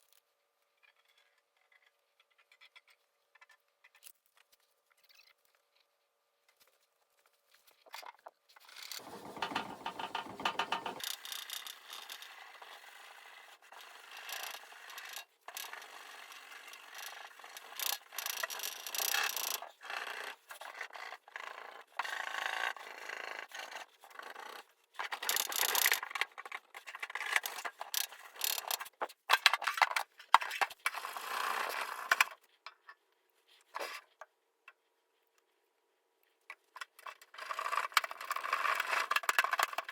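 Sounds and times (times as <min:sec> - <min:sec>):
hand scraping on steel case: 0:09.0 - 0:11.0.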